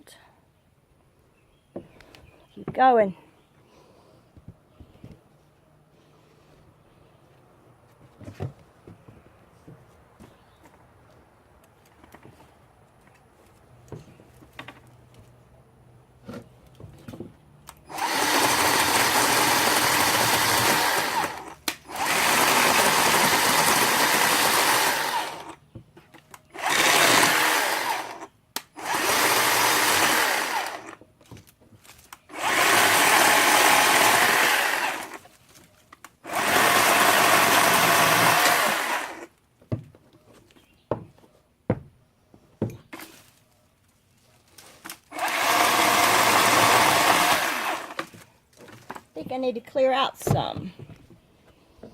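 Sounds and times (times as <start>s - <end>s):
electric chainsaw cutting stems: 17.7s - 25.6s, 26.4s - 31.0s, 32.2s - 35.3s, 36.2s - 39.4s, 44.8s - 48.3s.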